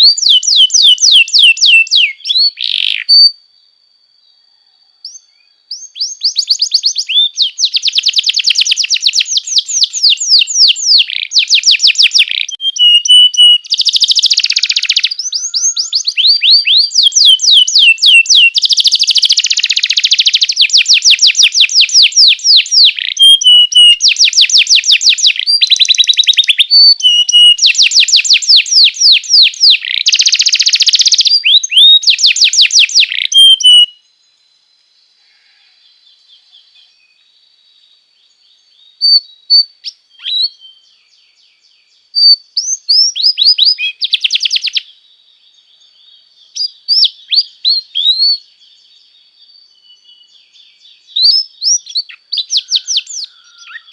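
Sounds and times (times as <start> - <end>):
canary singing rapid trills: 0.0 - 3.4, 5.1 - 34.0, 42.2 - 44.9, 51.1 - 53.9.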